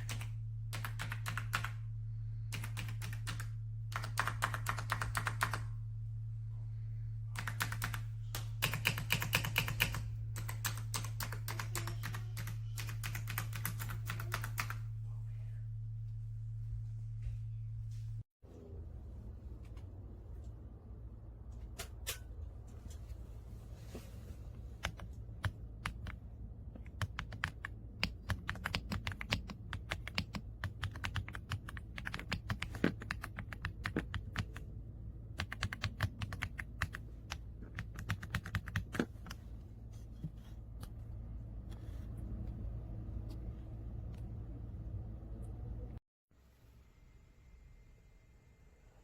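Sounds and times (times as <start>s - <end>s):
mechanical keyboard typing: 0.0s - 1.8s, 2.5s - 5.7s, 7.4s - 14.8s, 26.8s - 34.6s, 35.4s - 39.1s.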